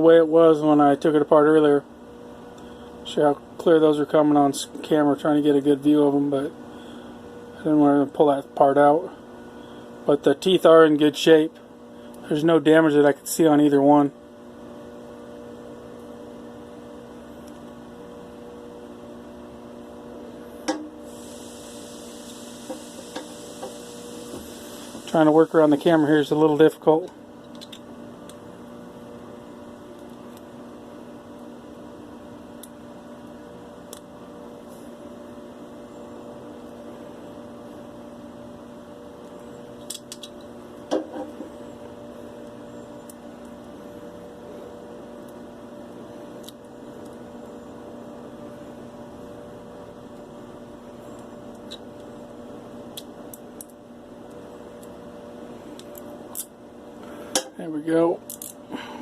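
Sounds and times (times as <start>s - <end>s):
steady background hum: 0.0s - 59.0s
small metal parts clicking: 58.3s - 58.6s.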